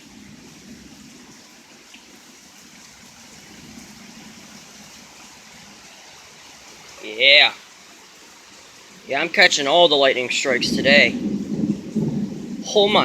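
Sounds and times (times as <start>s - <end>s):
steady rain: 0.0s - 13.0s.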